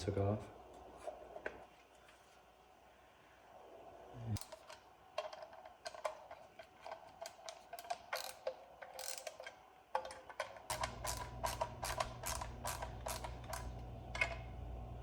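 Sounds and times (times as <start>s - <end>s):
plastic parts and tool clicking: 4.4s - 14.4s.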